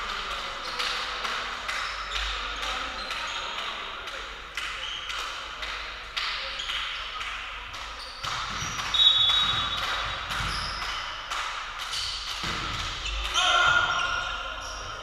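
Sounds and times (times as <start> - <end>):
shoe squeaks on court: 8.0 - 11.0, 11.9 - 15.0
volleyball smacks and bounces: 8.2 - 10.9, 12.3 - 13.4.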